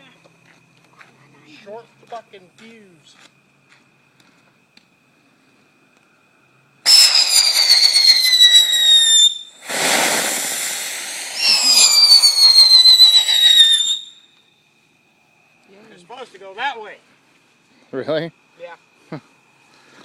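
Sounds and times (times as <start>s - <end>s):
firework hissing: 6.8s - 14.4s
firework whistle falling: 6.8s - 14.5s.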